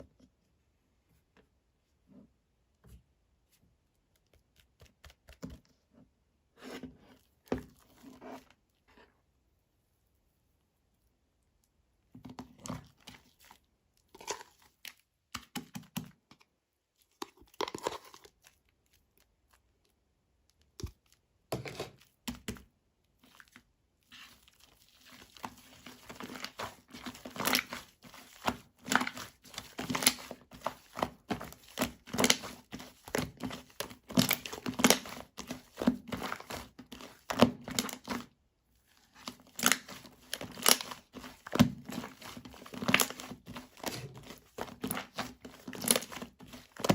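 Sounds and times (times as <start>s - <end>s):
crinkling and tearing: 23.2s - 38.3s, 39.0s - 46.9s.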